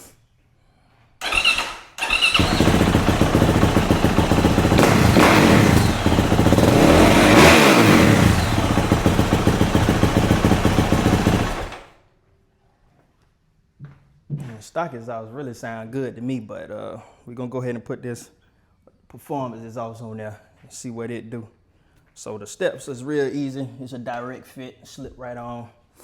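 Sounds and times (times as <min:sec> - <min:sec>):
dirt bike engine revving: 0:01.2 - 0:11.9.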